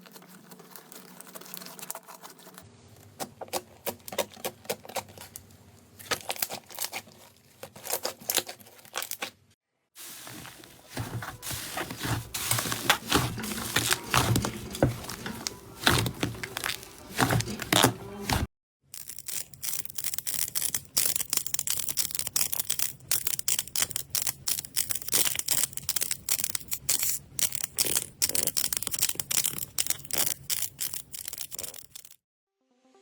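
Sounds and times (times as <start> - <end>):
slime crackling and popping: 19.0 - 32.1.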